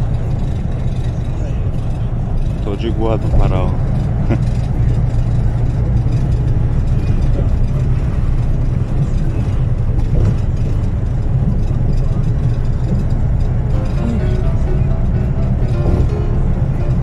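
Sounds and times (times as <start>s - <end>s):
bus engine rumble inside cabin: 0.0s - 17.0s.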